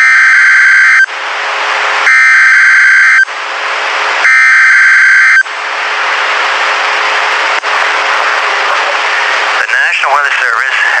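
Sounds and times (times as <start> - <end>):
buzzing digital data tones: 4.2 - 5.4
radio static hiss: 6.4 - 11.0.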